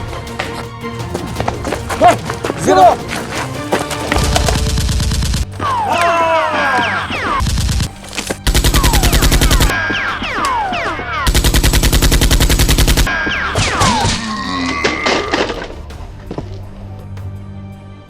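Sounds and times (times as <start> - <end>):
automatic gunfire: 11.3 - 13.1.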